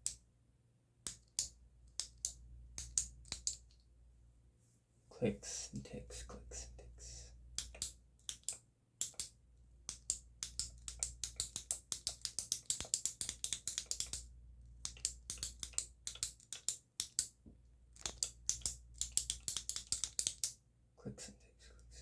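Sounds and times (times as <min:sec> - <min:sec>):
sharp crisp clicks: 0:01.0 - 0:03.8, 0:07.6 - 0:17.4, 0:18.0 - 0:20.6.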